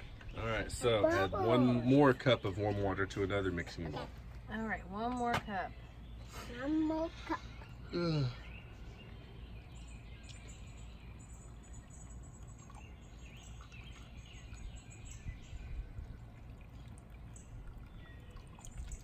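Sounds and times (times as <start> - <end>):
low steady hum: 0.0 - 19.0.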